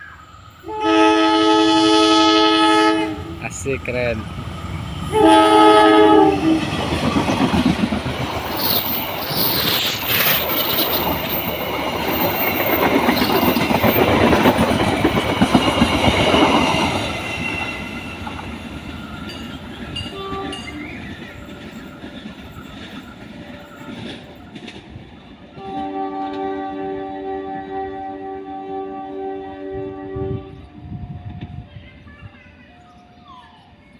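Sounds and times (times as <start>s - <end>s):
train wheels clattering on rails: 4.3s - 26.6s
thin high squeal: 8.6s - 11.6s.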